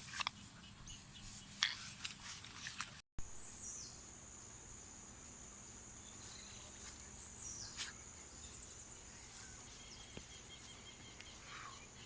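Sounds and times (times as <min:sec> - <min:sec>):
descending bird calls: 0:07.3 - 0:12.0.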